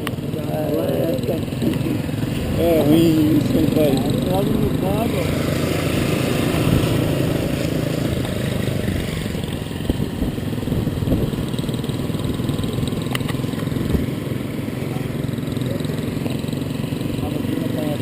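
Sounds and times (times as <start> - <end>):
vehicle engine running: 0.0 - 18.0.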